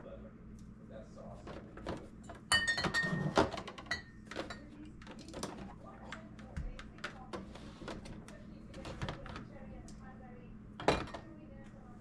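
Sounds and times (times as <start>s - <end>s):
jars and containers clinking: 2.5s - 4.6s.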